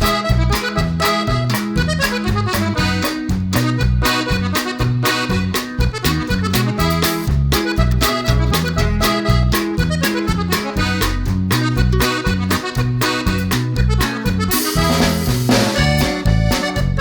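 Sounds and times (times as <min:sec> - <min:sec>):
bass line: 0:00.0 - 0:17.0
music with steady beat: 0:00.0 - 0:17.0
reedy lead melody: 0:00.0 - 0:17.0.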